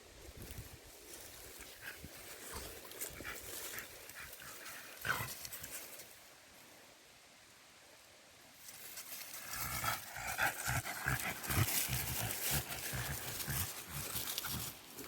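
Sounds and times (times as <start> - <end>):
dog panting: 9.5 - 14.8.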